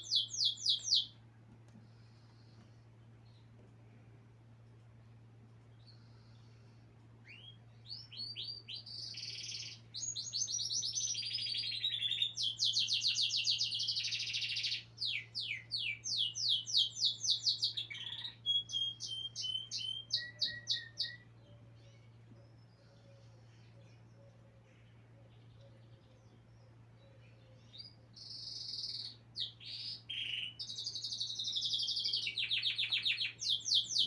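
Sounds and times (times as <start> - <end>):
songbird trilling song: 0.0 - 1.2, 7.2 - 34.0
faint low hum: 0.0 - 34.0.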